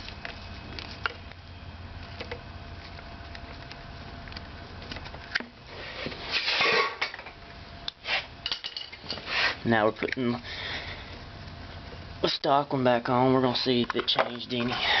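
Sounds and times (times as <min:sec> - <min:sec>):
low steady hum: 0:00.0 - 0:15.0
plastic and metal parts clattering: 0:13.7 - 0:15.0.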